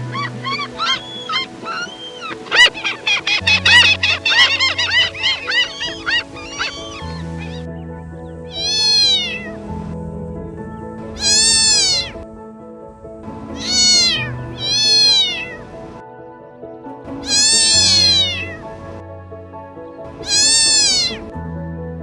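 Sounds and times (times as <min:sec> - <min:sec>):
background music: 0:00.0 - 0:22.0
cat meowing: 0:08.5 - 0:09.6, 0:11.2 - 0:12.2, 0:13.5 - 0:15.8, 0:17.2 - 0:18.7, 0:20.2 - 0:21.3.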